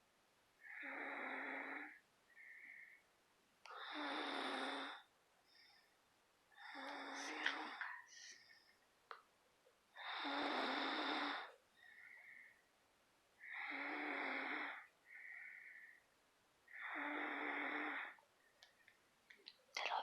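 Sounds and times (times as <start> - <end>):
person snoring: 0.6 - 2.6, 10.0 - 11.5, 13.4 - 15.8, 16.7 - 18.2.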